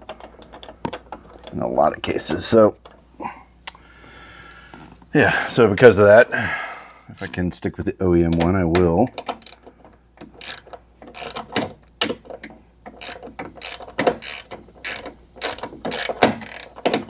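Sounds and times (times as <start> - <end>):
ratchet wrench clicking: 7.2 - 7.4, 9.3 - 9.6, 10.4 - 11.7, 13.0 - 17.0.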